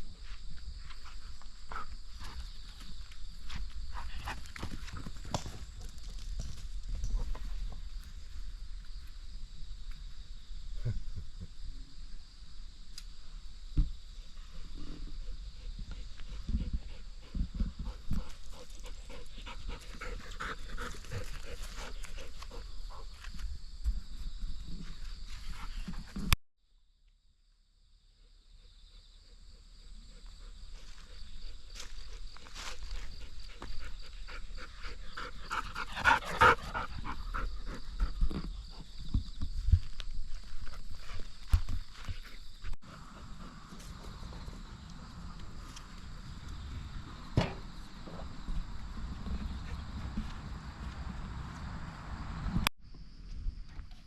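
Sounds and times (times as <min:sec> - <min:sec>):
dog panting: 0:33.3 - 0:38.1.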